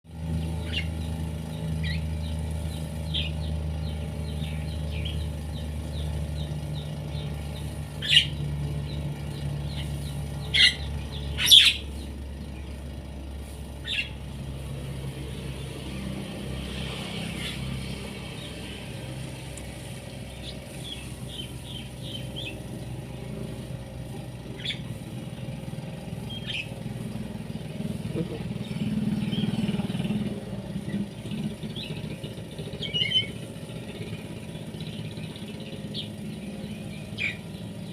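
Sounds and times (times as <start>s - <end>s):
birds chirping: 0.1s - 37.9s
small engine running: 0.1s - 37.9s.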